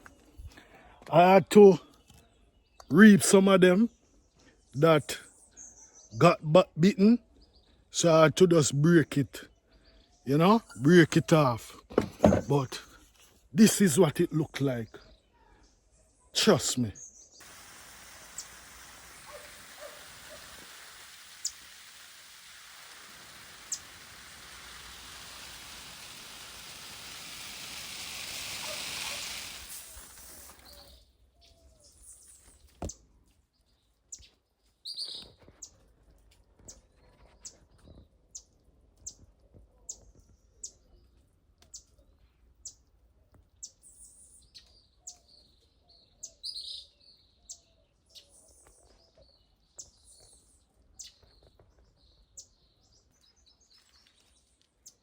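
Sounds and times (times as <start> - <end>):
birds chirping: 0.0 - 24.4.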